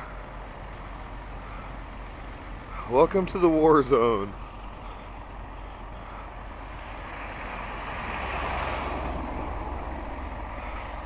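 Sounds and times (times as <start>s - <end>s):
low engine hum of idling trucks: 0.0s - 11.0s.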